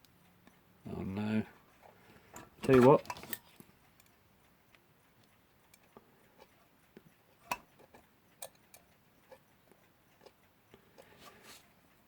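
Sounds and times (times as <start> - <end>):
metal clock parts clicking: 5.2 - 11.1.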